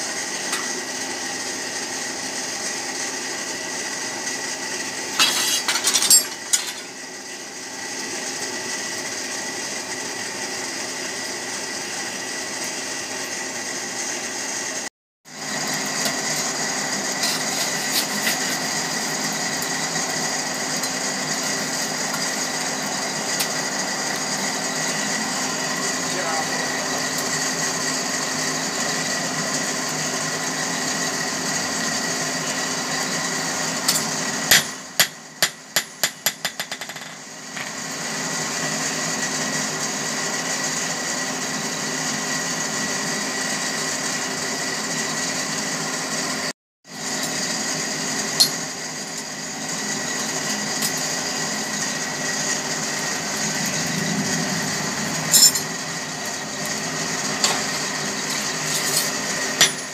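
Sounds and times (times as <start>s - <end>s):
hammer bouncing on anvil: 34.5s - 37.2s, 59.6s - 59.9s.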